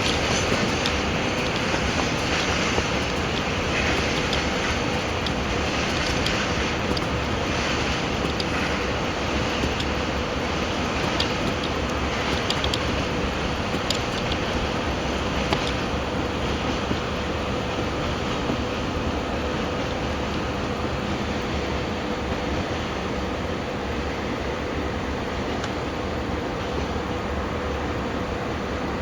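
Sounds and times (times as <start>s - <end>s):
light clicks: 0.0s - 15.9s
freight train rumbling: 0.0s - 29.0s.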